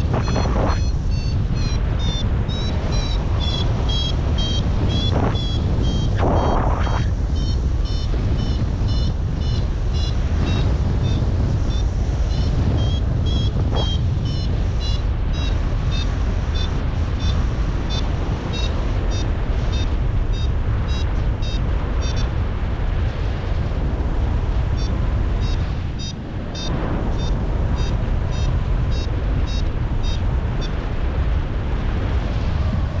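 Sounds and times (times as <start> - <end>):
variometer short high beeps: 0.0 - 16.0, 25.4 - 30.7
wind rumble on microphone: 0.0 - 33.0.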